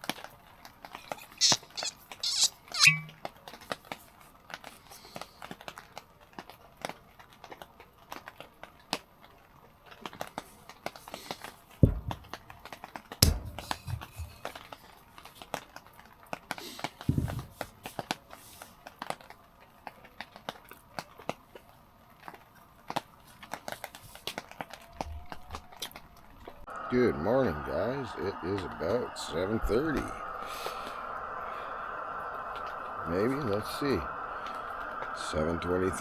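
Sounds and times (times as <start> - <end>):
campfire crackling and popping: 0.0 - 36.0
dull low thumps: 11.8 - 12.5, 13.2 - 14.4.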